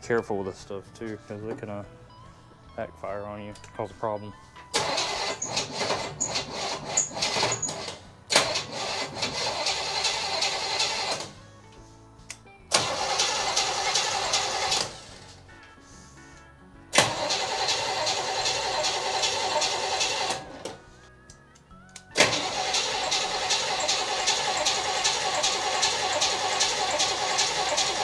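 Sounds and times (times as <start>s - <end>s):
background music: 0.0s - 28.0s
car engine running roughly: 4.8s - 11.4s, 12.7s - 15.2s, 17.0s - 20.8s, 22.2s - 28.0s.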